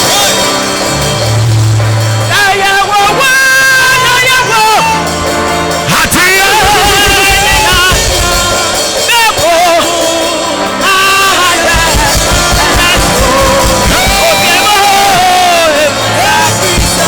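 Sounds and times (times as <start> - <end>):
singing over a band: 2.2 - 17.0
pulsing bass: 11.7 - 17.0.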